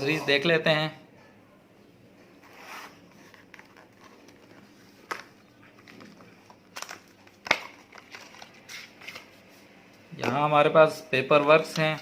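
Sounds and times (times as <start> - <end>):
cardboard and paper rustling: 2.4 - 9.7.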